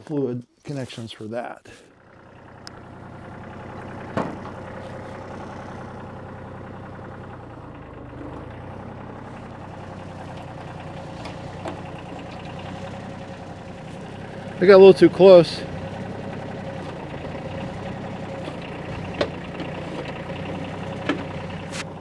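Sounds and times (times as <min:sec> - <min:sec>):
diesel tractor engine running: 0:01.9 - 0:22.0.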